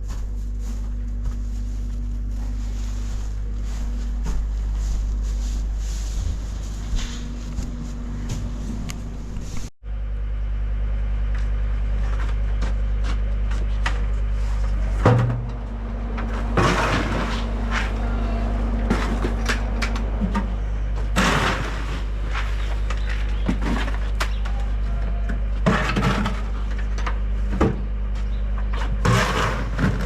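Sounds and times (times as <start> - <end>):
engine humming: 0.0 - 30.0
clunks and knocks: 12.1 - 30.0.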